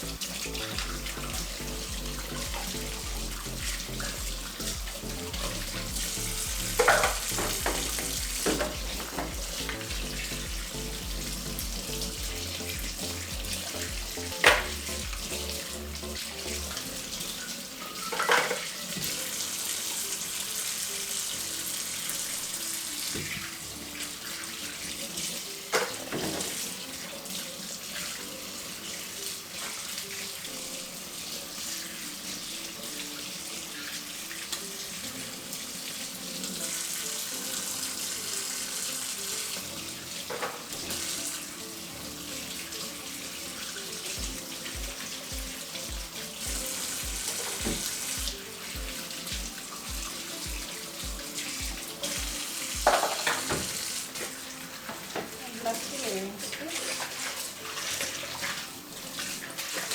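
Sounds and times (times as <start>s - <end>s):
tap running into sink: 0.0s - 19.2s, 23.0s - 23.6s, 25.2s - 27.4s, 39.6s - 41.4s, 43.7s - 55.4s
bottles knocking: 6.6s - 10.0s.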